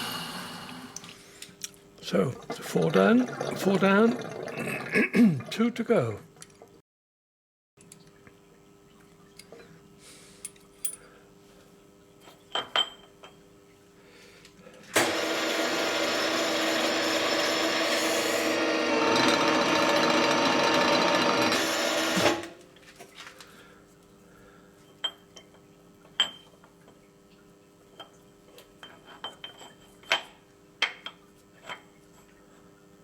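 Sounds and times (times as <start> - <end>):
power tool running loudly: 15.0 - 22.6.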